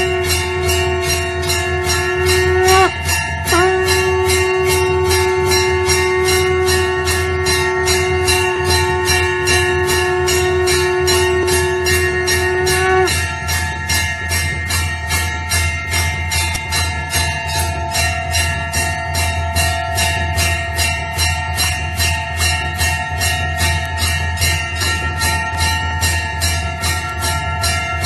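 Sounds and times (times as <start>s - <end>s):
conch shell blown: 0.0s - 14.0s
bell rung rapidly: 0.0s - 28.0s.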